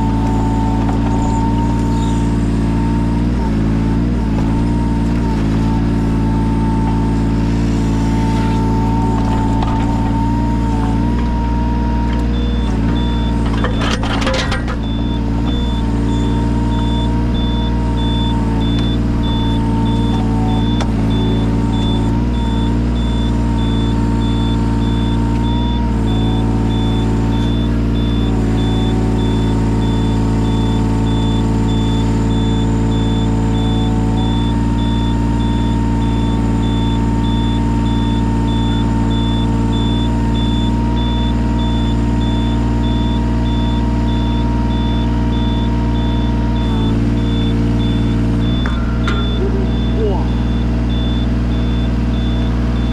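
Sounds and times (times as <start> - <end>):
excavator diesel engine running: 0.0 - 52.9
clatter: 12.2 - 16.3
faint high beep: 12.4 - 52.9.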